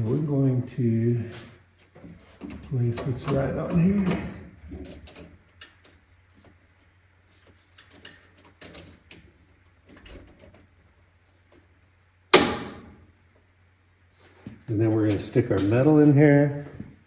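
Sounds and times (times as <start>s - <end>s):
parts clicking and knocking: 1.8s - 6.6s, 7.3s - 10.7s.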